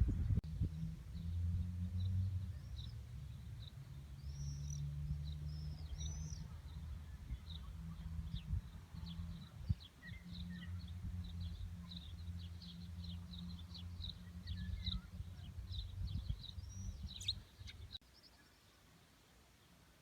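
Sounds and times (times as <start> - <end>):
steady low rumble: 0.0 - 3.8
small birds chirping: 0.0 - 20.0.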